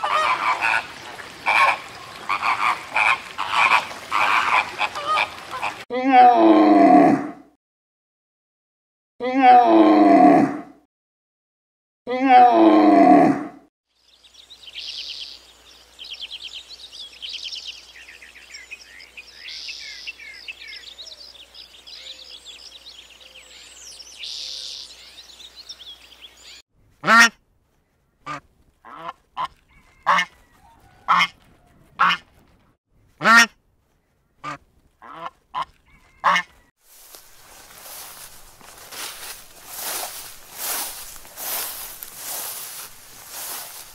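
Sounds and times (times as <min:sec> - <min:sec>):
waterfowl honking: 0:00.0 - 0:05.8, 0:27.0 - 0:27.4, 0:28.3 - 0:31.4, 0:32.0 - 0:32.3, 0:33.2 - 0:33.6, 0:34.4 - 0:43.9
small birds chirping: 0:13.9 - 0:26.6, 0:34.0 - 0:43.9.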